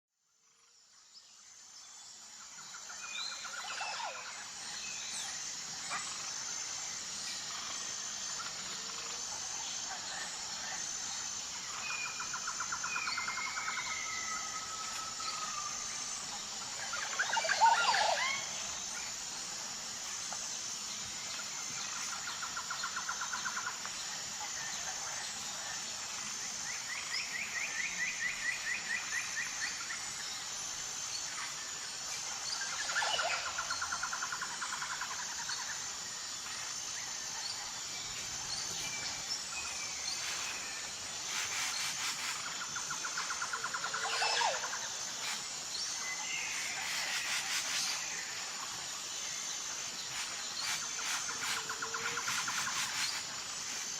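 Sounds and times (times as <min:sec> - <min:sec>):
high-pitched insect drone: 0:00.3 - 0:53.9
birds calling with fast trills: 0:02.8 - 0:20.2, 0:36.5 - 0:53.9.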